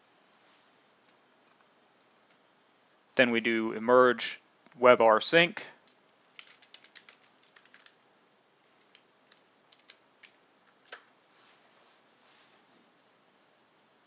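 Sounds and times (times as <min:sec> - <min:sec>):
keyboard typing: 0:06.3 - 0:08.0, 0:08.6 - 0:11.1.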